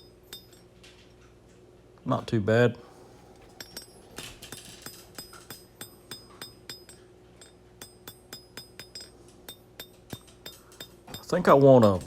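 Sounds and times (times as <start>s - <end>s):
hammer striking steel on anvil: 0.0s - 0.7s, 3.6s - 12.0s.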